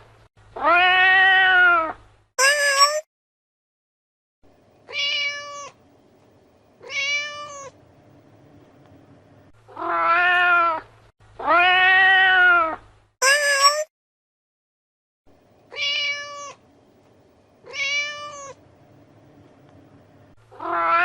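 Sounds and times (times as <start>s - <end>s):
cat meowing: 0.6s - 3.0s, 4.9s - 5.8s, 6.8s - 7.8s, 9.7s - 13.9s, 15.7s - 16.6s, 17.6s - 18.6s, 20.5s - 21.0s.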